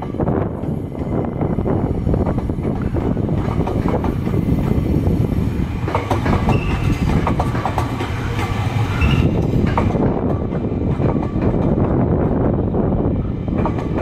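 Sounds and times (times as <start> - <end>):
electric train running past: 0.0 - 14.0
wheels clattering over rail joints: 5.8 - 12.0.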